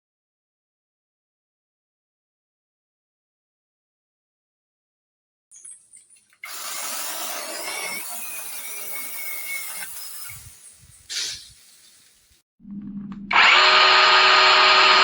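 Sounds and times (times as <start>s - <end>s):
mini chainsaw cutting wood: 6.4s - 10.4s, 13.3s - 15.0s.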